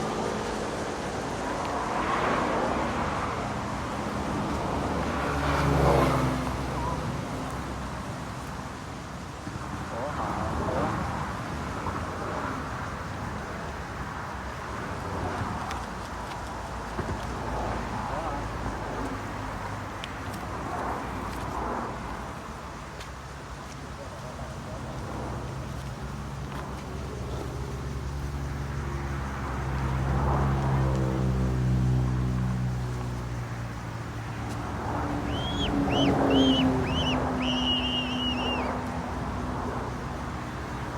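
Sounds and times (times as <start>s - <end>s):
road traffic: 0.0s - 40.9s
vehicle engine passing: 27.3s - 39.4s.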